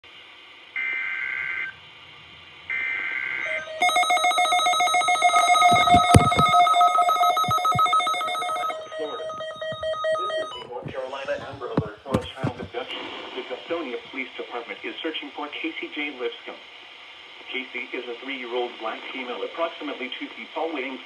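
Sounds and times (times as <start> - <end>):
shrill chirping data tones: 3.7 - 10.6.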